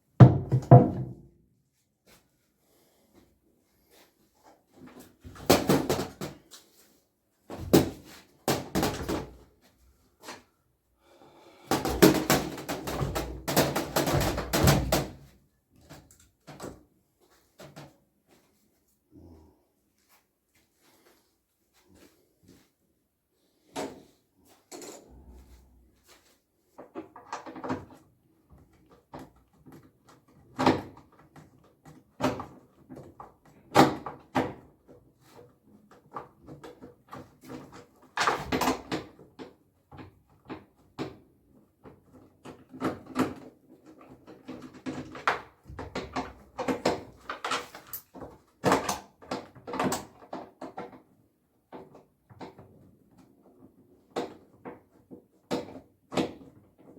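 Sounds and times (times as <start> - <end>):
tools and parts clattering: 24.7 - 25.2, 44.4 - 50.2.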